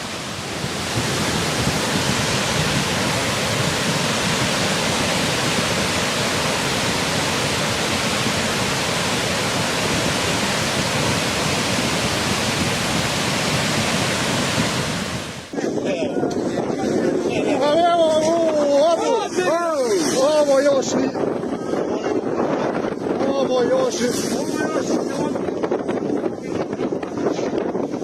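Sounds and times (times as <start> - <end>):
rushing water: 0.0 - 15.8.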